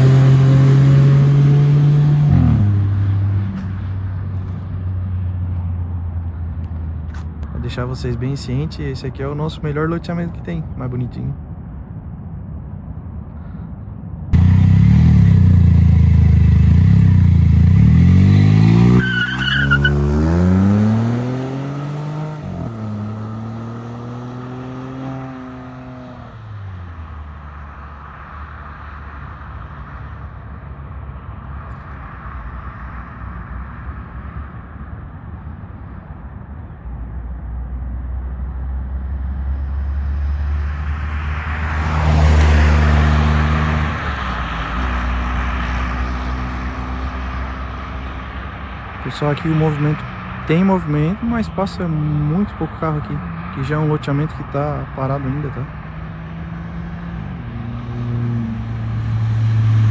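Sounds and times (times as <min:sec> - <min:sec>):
car engine accelerating: 0:00.0 - 0:04.6, 0:14.4 - 0:27.1, 0:39.2 - 0:47.8, 0:48.6 - 0:59.9.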